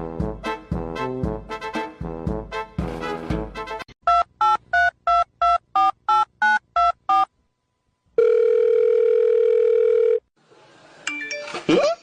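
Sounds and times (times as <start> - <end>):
steady phone tone: 8.2 - 10.3.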